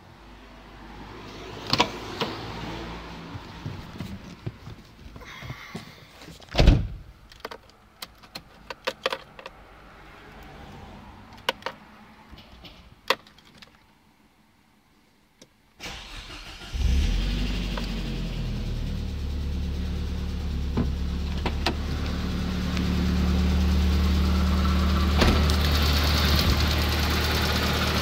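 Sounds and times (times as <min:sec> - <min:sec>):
car engine starting and running: 0:15.8 - 0:28.0.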